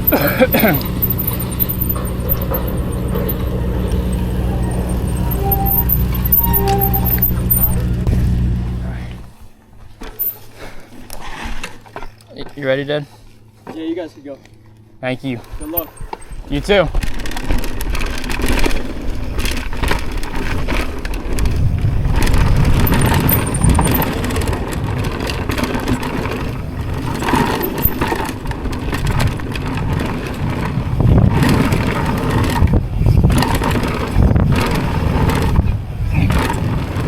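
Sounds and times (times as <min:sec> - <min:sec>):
tyre noise: 0:00.0 - 0:12.2, 0:15.5 - 0:37.0
bike frame and chain rattling: 0:00.0 - 0:37.0
wind rumble on microphone: 0:15.6 - 0:37.0.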